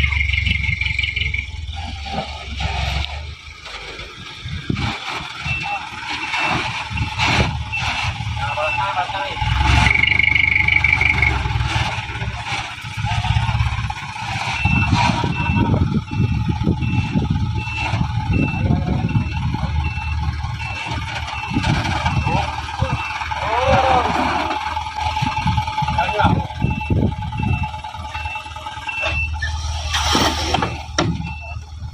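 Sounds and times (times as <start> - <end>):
reversing alarm beeps: 0.0 - 2.2, 5.1 - 24.1, 25.0 - 31.7
truck engine running: 0.0 - 31.9.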